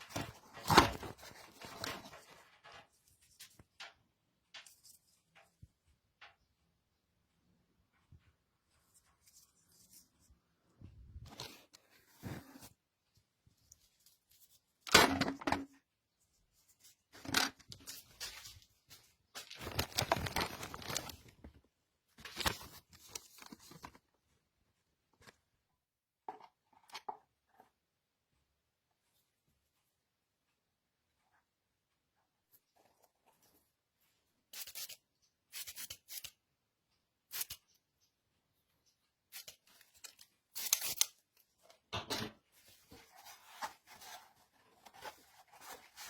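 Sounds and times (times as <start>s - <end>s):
tearing rustling handling noise: 17.7s - 21.4s, 39.3s - 41.2s, 42.6s - 46.0s.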